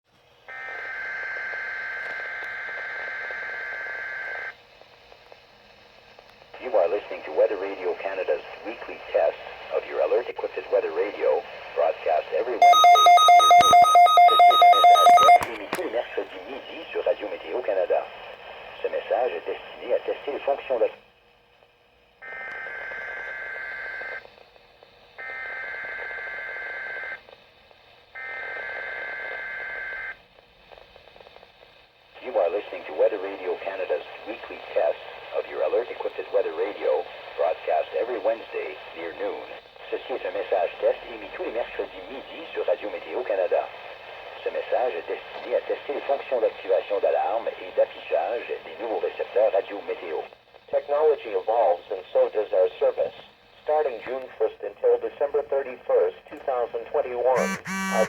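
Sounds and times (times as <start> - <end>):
radio static: 6.6 - 21.0, 32.2 - 58.0
steady electronic alert tone: 57.4 - 58.0.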